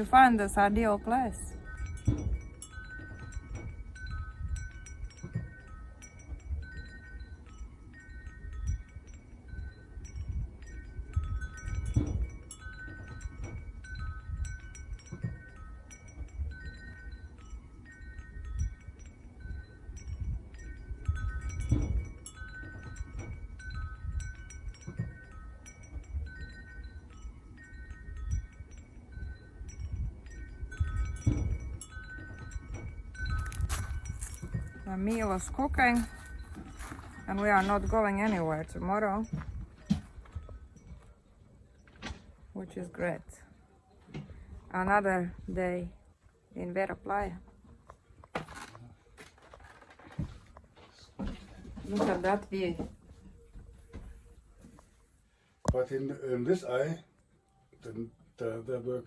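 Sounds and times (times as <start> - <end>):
wind buffeting microphone: 0.0 - 42.4
wind chimes ringing: 0.0 - 46.3.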